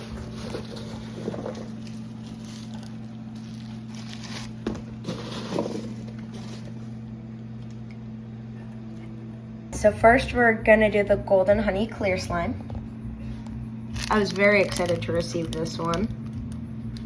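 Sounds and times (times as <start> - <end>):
packaging rustling: 0.0 - 6.8, 13.9 - 16.3
low electrical hum: 0.0 - 17.0.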